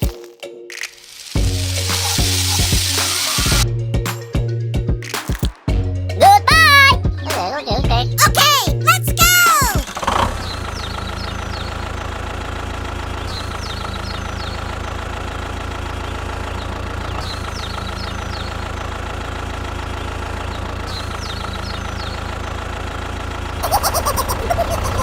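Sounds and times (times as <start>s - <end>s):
engine idling with low knocking: 9.8s - 23.8s.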